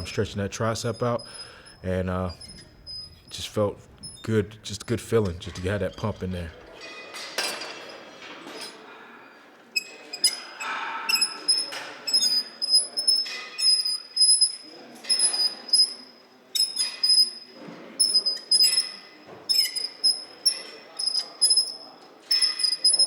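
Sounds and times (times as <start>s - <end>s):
short high-pitched squeaks: 0.8s - 4.3s, 9.8s - 23.0s.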